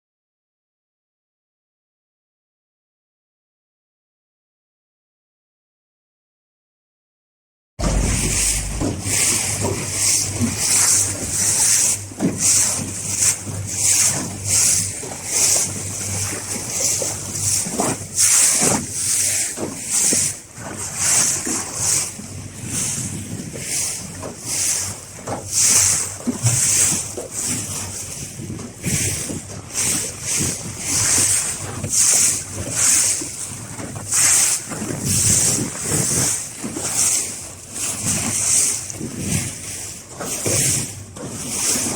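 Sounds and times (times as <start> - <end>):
wind buffeting microphone: 7.8 - 9.5
sea water rushing and splashing: 7.8 - 28.3, 28.9 - 41.9.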